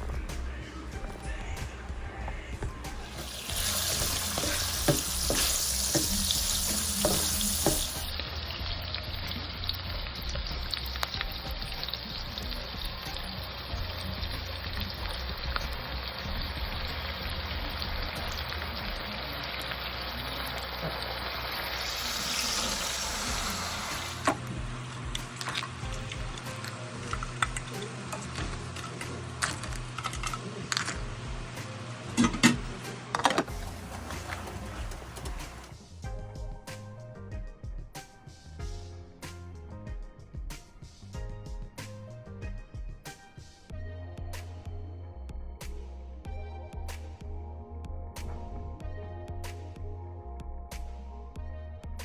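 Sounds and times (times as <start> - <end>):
food sizzling in a pan: 3.0 - 35.8
utensil clicking stirring: 3.1 - 20.8.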